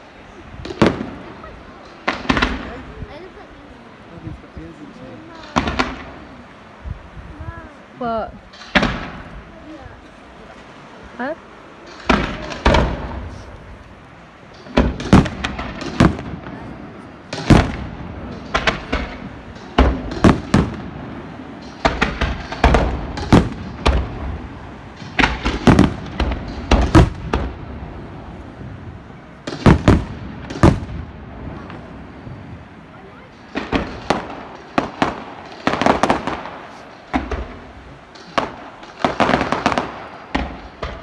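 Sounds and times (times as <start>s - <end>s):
fireworks bursting with echo: 0.0s - 41.0s.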